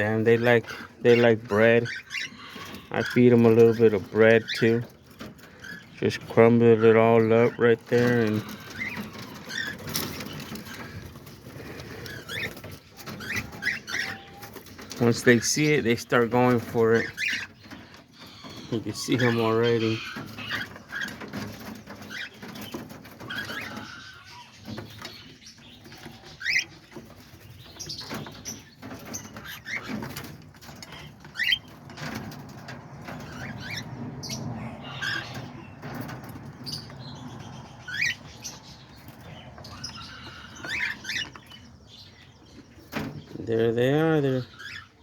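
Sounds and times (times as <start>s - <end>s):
cockatiels chirping: 0.0s - 32.4s, 33.0s - 43.2s, 44.0s - 45.0s
wings fluttering: 7.4s - 41.2s.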